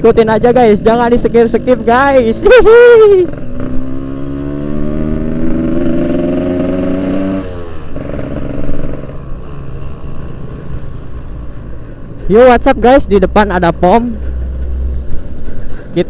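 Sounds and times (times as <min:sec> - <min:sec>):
two-stroke motorcycle engine revving: 0:00.0 - 0:12.3.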